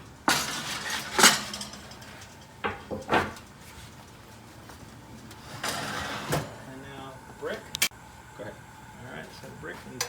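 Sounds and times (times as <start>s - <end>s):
bread peel scraping oven shelf: 0.3s - 2.4s, 5.4s - 6.6s.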